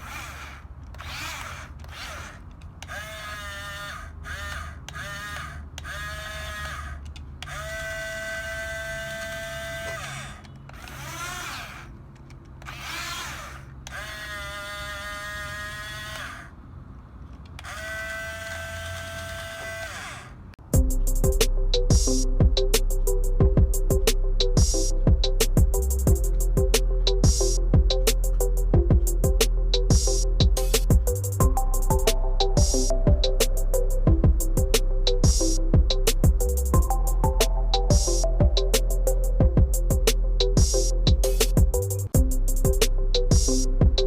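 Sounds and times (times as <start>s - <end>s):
electric motors whining: 0.0s - 12.0s, 12.6s - 16.6s, 17.6s - 20.4s
steady low hum: 20.7s - 44.0s.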